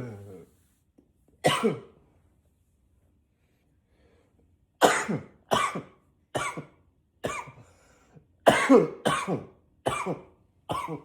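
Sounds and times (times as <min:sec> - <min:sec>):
man coughing: 0:01.4 - 0:01.9, 0:04.8 - 0:07.6, 0:08.5 - 0:11.0.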